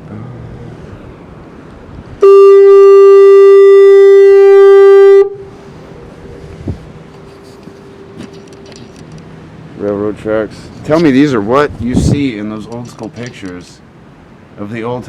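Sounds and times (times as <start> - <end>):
fog horn blast: 2.2 - 5.7.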